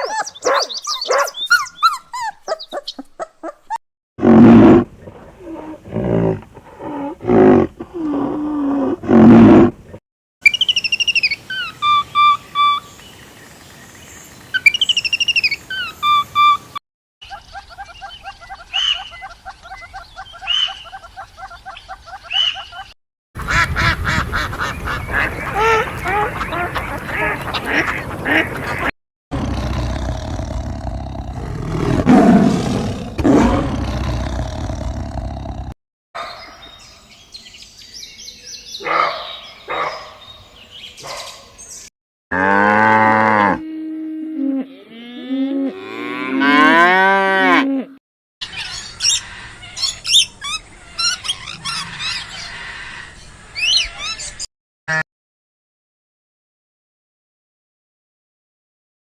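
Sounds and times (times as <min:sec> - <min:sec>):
high chirping calls: 0:00.0 - 0:03.3, 0:10.4 - 0:13.2, 0:14.5 - 0:23.0, 0:53.2 - 0:54.5
cattle mooing: 0:44.6 - 0:47.9.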